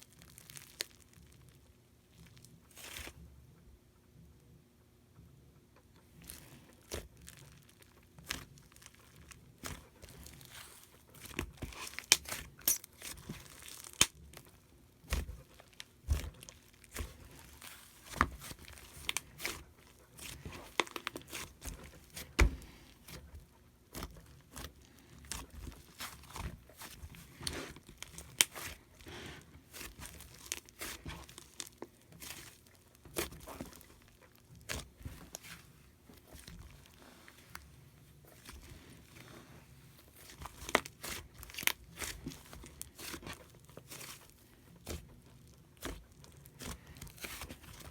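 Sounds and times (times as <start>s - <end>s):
slime squishing and crackling: 0.0s - 3.2s, 6.0s - 47.9s.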